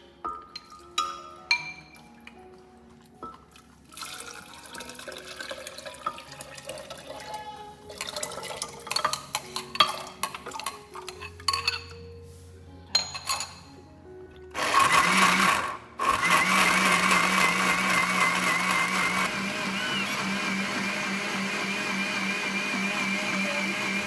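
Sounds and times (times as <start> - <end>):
dishes and utensils clinking: 0.2 - 2.4, 5.6 - 12.2, 12.9 - 13.8
liquid pouring into container: 3.9 - 7.3, 7.9 - 9.0.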